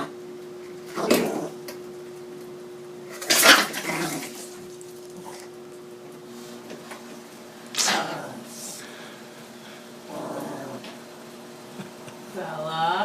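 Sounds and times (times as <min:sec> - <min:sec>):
small dog growling: 0:00.9 - 0:01.6, 0:03.1 - 0:04.6, 0:07.8 - 0:08.8, 0:10.0 - 0:11.0.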